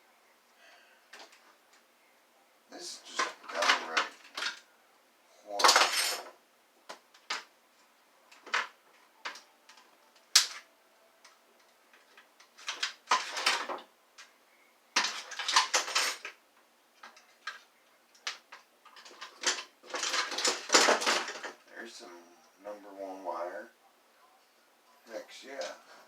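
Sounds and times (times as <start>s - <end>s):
plastic parts clicking and knocking: 3.0s - 4.7s, 5.6s - 7.5s, 8.3s - 14.3s, 15.0s - 21.7s
rattling and scraping: 18.4s - 21.7s.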